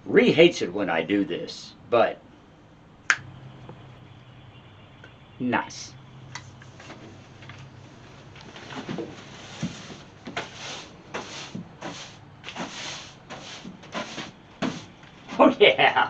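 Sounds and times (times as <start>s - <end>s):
push broom sweeping floor: 8.4s - 15.7s.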